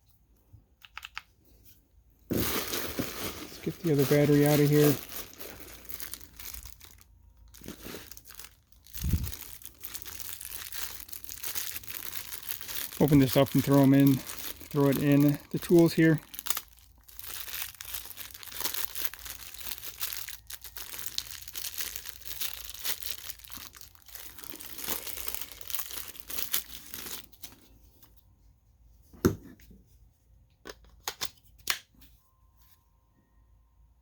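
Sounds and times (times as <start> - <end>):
parts clicking and knocking: 0.7 - 1.4
plastic packaging crinkling and tearing: 2.3 - 27.8.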